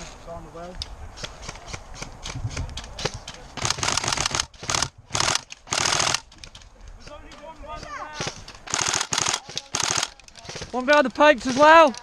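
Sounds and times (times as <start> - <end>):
sharp clicks: 0.8 - 6.7, 8.2 - 12.0
airsoft gun full-auto bursts: 3.6 - 6.3, 8.6 - 10.8.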